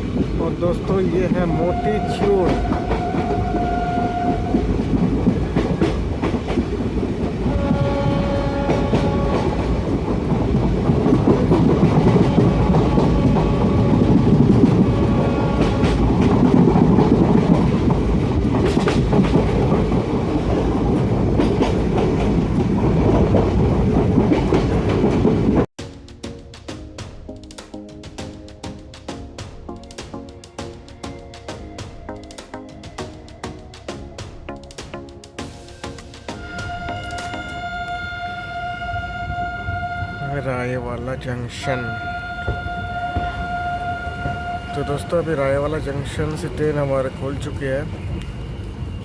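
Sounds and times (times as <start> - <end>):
wheels clacking over rail joints: 0.0 - 25.7
train rumbling: 0.0 - 49.0
train horn blast: 1.5 - 4.8, 7.4 - 9.9, 12.0 - 16.3, 36.3 - 40.8, 41.5 - 45.7
music: 25.8 - 39.4.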